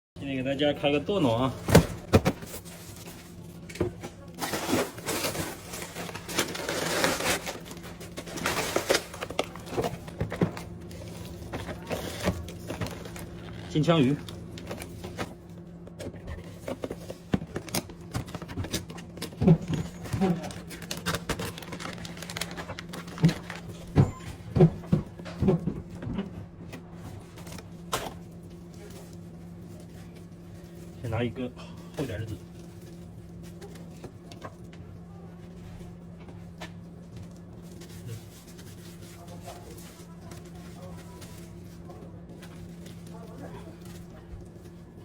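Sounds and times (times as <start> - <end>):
steady low hum: 0.2 - 45.0
wrapping rustling: 4.3 - 15.4, 16.5 - 24.0.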